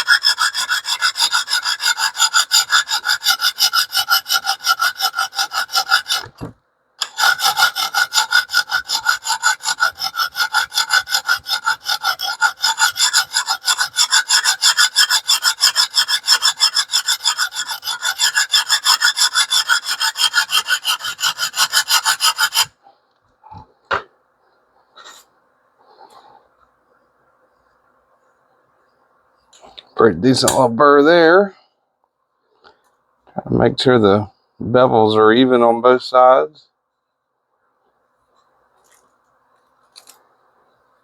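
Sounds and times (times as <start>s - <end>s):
sharpening stone rubbing steel blade: 0.0s - 6.3s, 7.0s - 22.7s.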